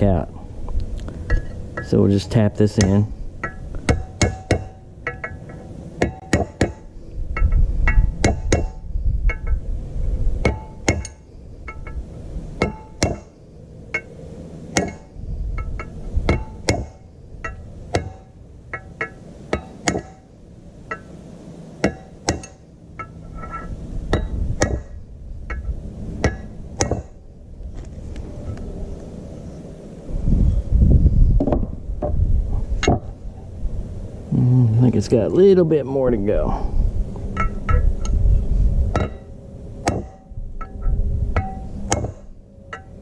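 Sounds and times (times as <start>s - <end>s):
hammer tapping metal: 2.7s - 9.6s, 10.4s - 12.0s, 12.6s - 13.3s, 14.7s - 20.3s, 21.8s - 27.2s, 39.0s - 40.8s.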